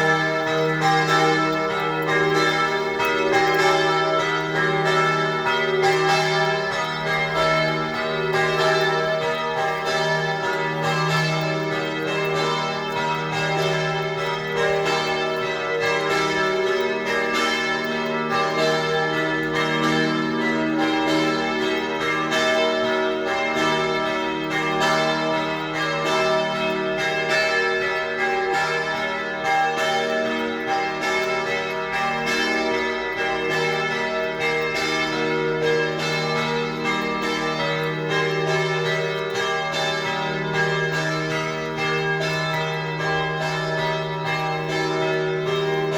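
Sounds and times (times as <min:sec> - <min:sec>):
church bells pealing: 0:00.0 - 0:45.9.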